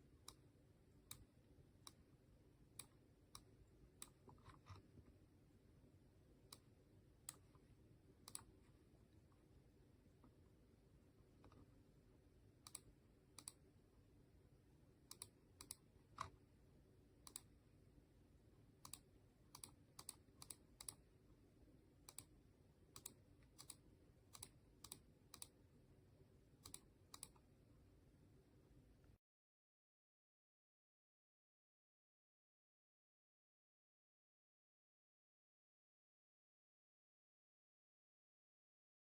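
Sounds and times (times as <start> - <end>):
low room hum: 0.0 - 29.2.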